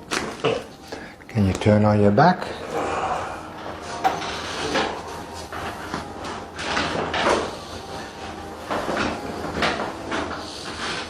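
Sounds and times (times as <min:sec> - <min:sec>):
treatment table creaking: 0:02.4 - 0:11.0.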